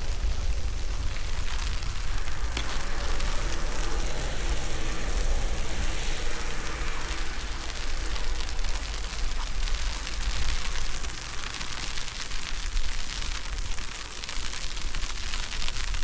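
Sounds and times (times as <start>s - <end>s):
wind buffeting microphone: 0.0s - 14.0s
steady hiss: 0.0s - 16.0s.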